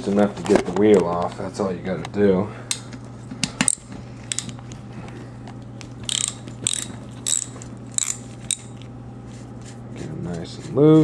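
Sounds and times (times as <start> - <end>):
socket ratchet clicking: 6.0 - 8.7.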